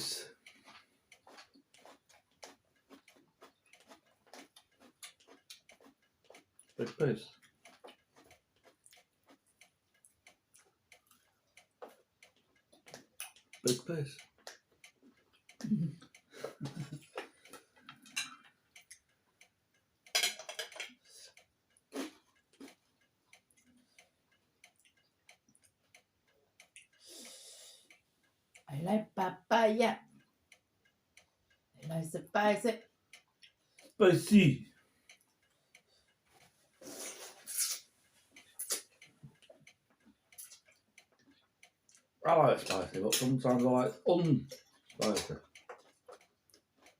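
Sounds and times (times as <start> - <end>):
chewing and mouth clicks: 0.3 - 19.5, 20.4 - 28.0, 34.8 - 43.0, 44.4 - 46.9.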